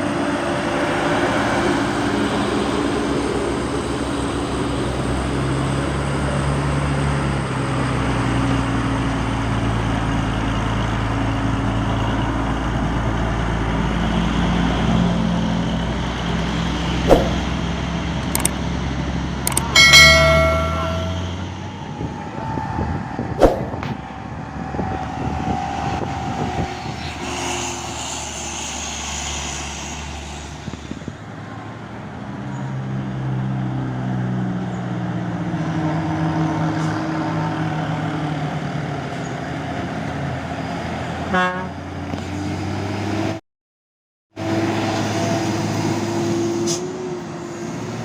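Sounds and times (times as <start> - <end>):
heavy truck diesel engines: 0.0 - 43.4, 44.4 - 48.0
passing road traffic: 0.0 - 43.4, 44.4 - 48.0
vehicle horn toot: 41.3 - 41.7.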